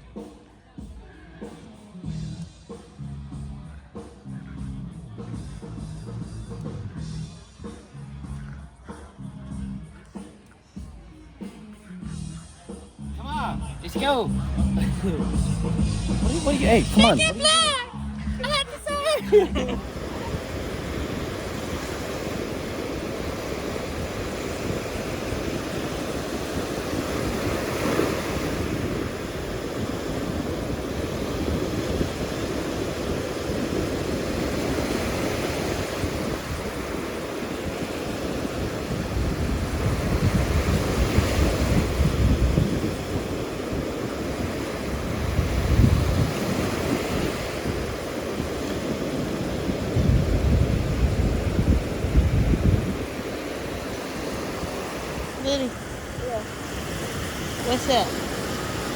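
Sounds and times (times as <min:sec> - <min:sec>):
ocean surf breaking: 0:13.3 - 0:58.9
wind buffeting microphone: 0:14.4 - 0:58.9.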